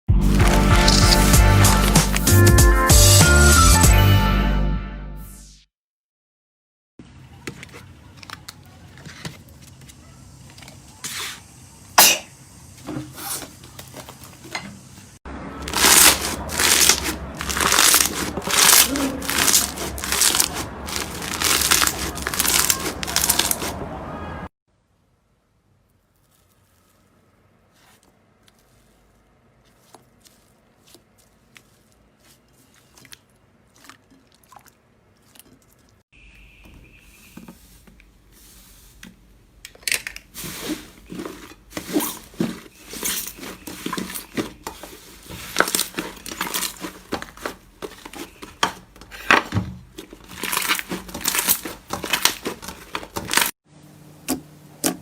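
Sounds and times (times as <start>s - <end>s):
slime squished by hand: 15.6s - 23.8s, 26.0s - 36.0s.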